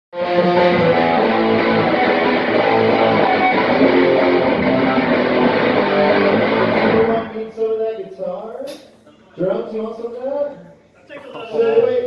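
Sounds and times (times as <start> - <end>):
electric guitar playing: 0.1 - 7.4.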